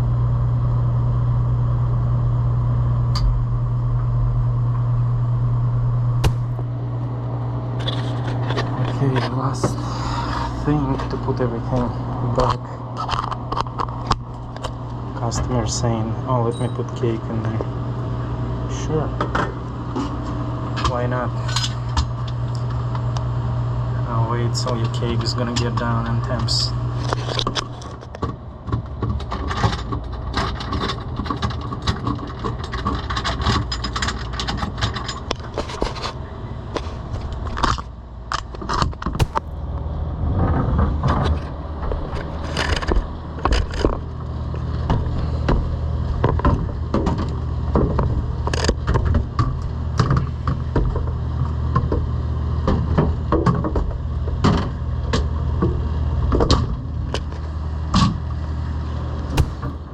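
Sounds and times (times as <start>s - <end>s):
refrigeration machinery humming: 4.4s - 12.9s, 39.2s - 40.1s, 59.4s - 59.9s.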